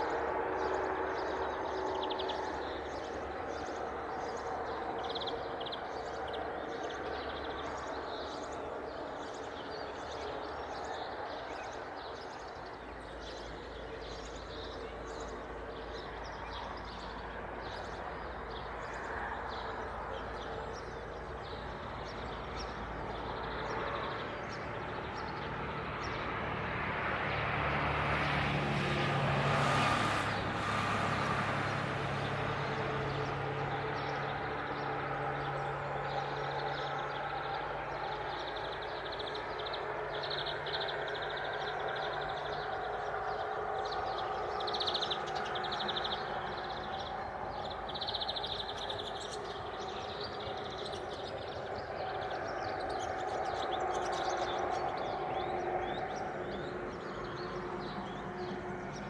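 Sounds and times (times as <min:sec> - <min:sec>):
steady outdoor rumble: 0:00.0 - 0:59.0
motor vehicle passing: 0:14.1 - 0:59.0.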